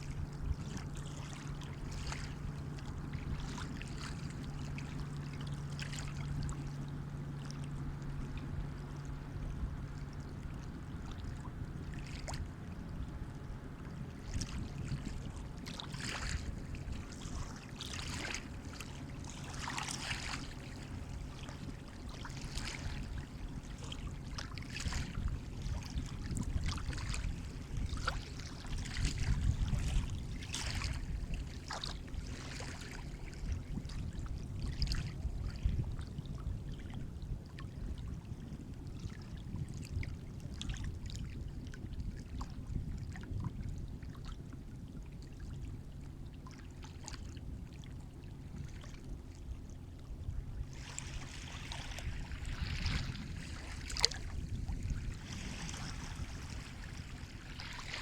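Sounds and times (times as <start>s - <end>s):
steady low rumble: 0.0s - 58.0s
sea waves splashing: 14.0s - 31.0s, 50.7s - 58.0s.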